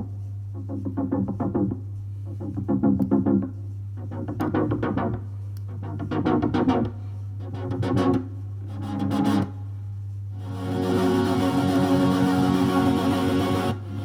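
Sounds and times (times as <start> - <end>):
low synthesizer drone: 5.8 - 14.0
synthesizer chord stabs: 10.4 - 14.0.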